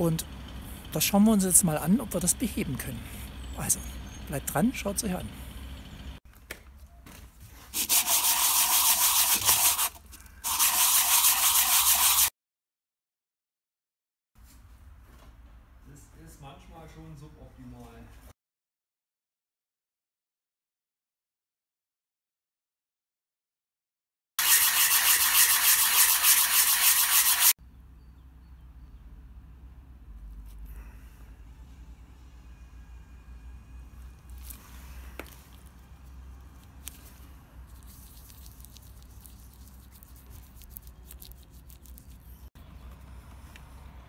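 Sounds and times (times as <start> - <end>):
brake pad rubbed on sandpaper: 7.6 - 12.3, 24.4 - 27.6, 36.9 - 42.5.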